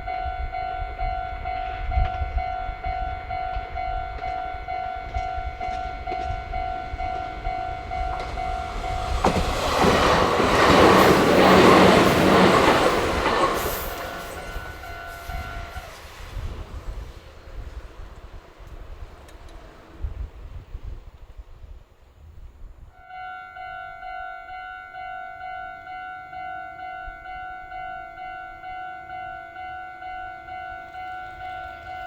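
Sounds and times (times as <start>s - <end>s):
level crossing bell ringing: 0.0s - 15.9s, 23.0s - 32.0s
electric train passing: 0.0s - 32.0s.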